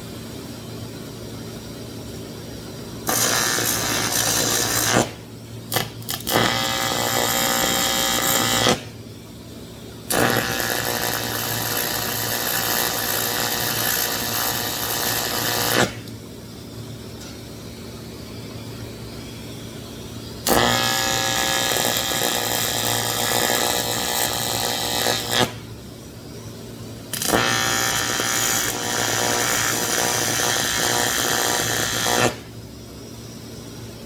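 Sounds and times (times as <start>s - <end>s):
welding arc buzzing and crackling: 3.0s - 9.0s, 10.1s - 16.2s, 20.4s - 25.8s, 27.1s - 32.6s.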